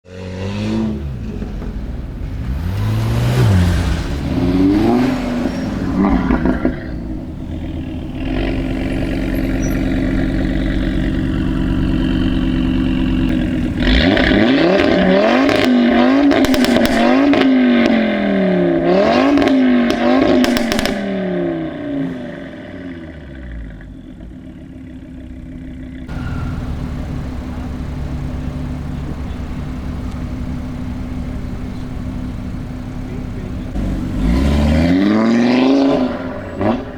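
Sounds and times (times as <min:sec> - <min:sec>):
car engine revving: 0:00.0 - 0:36.9
exhaust pops and crackles: 0:01.2 - 0:18.0, 0:19.4 - 0:21.1, 0:26.0 - 0:36.9.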